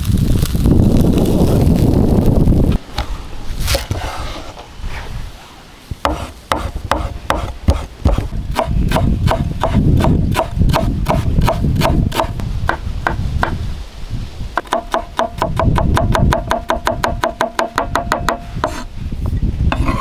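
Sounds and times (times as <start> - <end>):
knife chopping on wooden board: 3.6 - 4.6, 6.1 - 13.6, 14.6 - 18.8.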